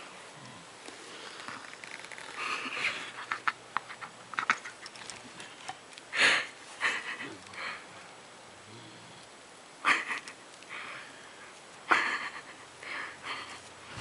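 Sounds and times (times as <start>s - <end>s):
rustling: 0.4s - 3.4s.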